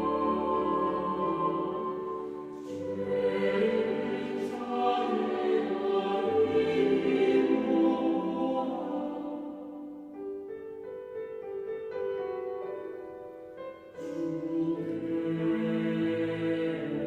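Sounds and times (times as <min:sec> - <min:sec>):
choir singing held chords: 0:00.0 - 0:10.1, 0:14.0 - 0:17.0.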